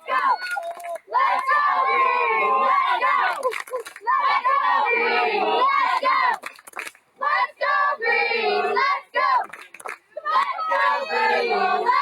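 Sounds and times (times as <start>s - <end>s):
young voices singing together: 4.0s - 6.4s, 7.2s - 9.5s, 10.2s - 12.0s.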